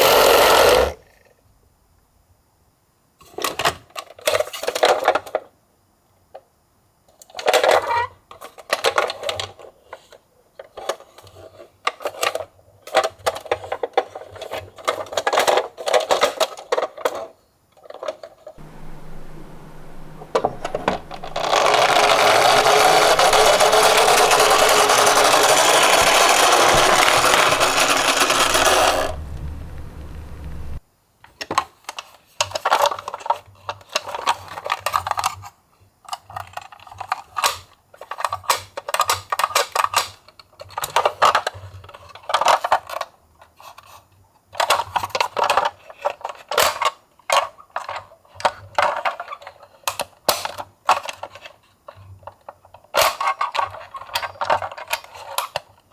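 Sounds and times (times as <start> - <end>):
steady rushing noise: 18.6 - 30.8
toy cars clattering down a slope: 20.0 - 30.8
low rumble: 26.8 - 30.8.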